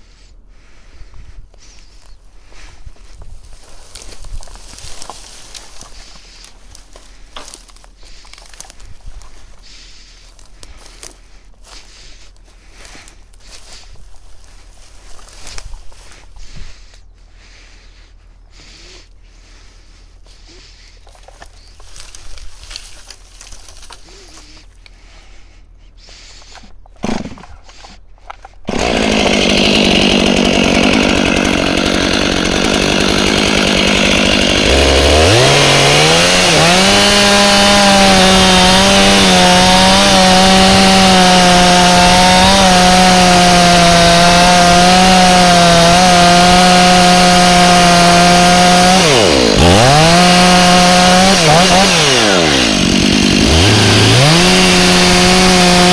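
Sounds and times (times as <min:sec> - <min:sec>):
chainsaw revving: 0:28.7 - 0:55.9.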